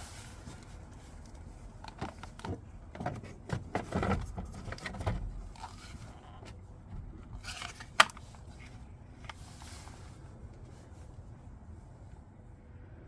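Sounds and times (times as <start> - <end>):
handling scrapes: 7.4 - 11.1.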